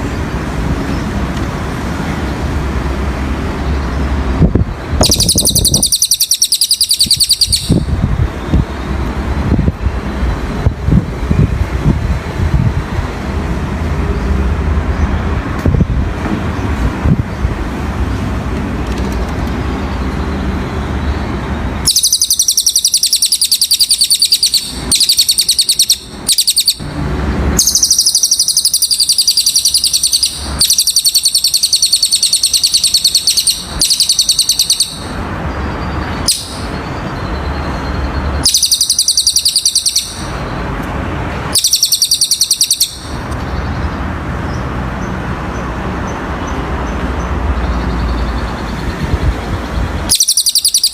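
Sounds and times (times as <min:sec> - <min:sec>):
songbird singing fast trills: 0:05.0 - 0:08.6, 0:21.8 - 0:26.8, 0:27.6 - 0:40.6, 0:41.5 - 0:43.8, 0:47.6 - 0:50.9.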